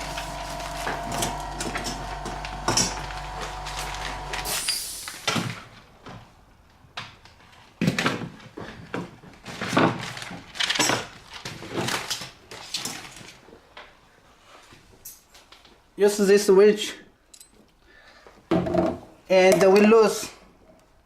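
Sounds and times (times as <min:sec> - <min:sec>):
tools clicking and clattering: 0:17.3 - 0:17.8.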